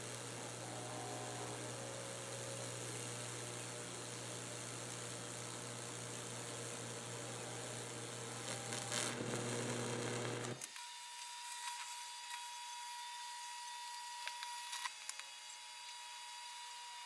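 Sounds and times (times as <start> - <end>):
electrical crackling and sizzling: 0.0 - 10.6
steady electrical hum: 0.0 - 10.6.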